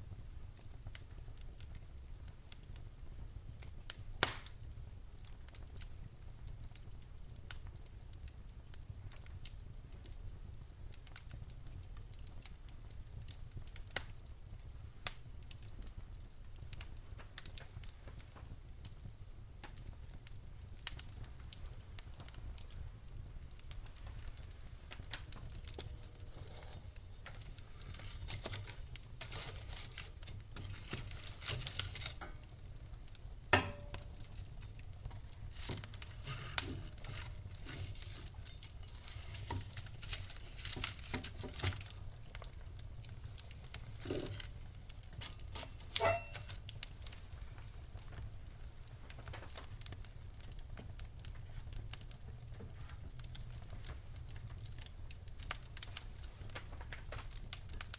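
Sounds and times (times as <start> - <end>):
wood fire crackling and popping: 0.0 - 57.9.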